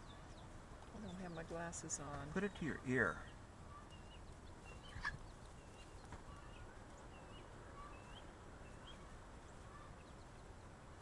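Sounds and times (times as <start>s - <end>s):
chicks peeping: 3.2s - 10.4s.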